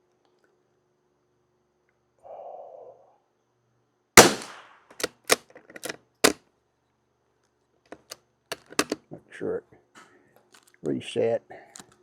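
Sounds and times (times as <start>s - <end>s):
rifle shot with echo: 4.2s - 4.8s
metallic bolt action clicks: 5.0s - 6.4s, 7.9s - 9.0s.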